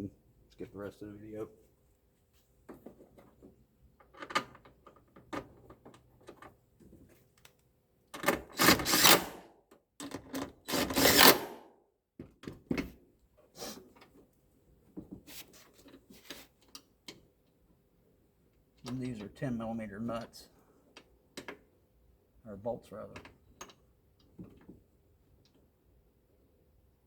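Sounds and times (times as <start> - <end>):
tools clicking and knocking: 10.0 - 11.6.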